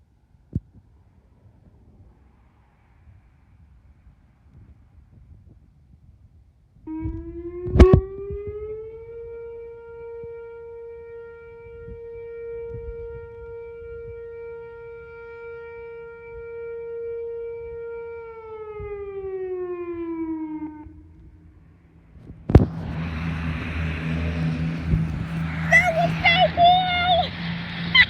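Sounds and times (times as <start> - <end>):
electronic siren tone: 6.9 - 21.3
steady rushing noise: 21.8 - 28.0.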